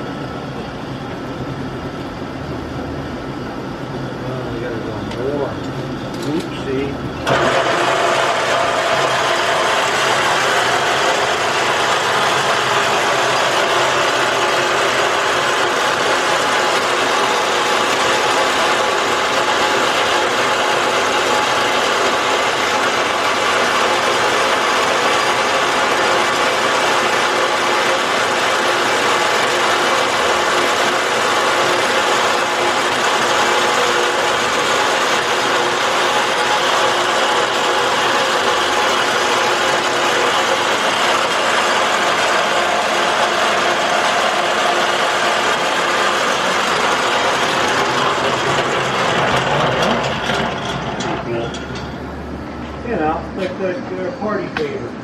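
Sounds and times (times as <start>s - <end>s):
machine tool whirring gears: 7.3s - 52.0s.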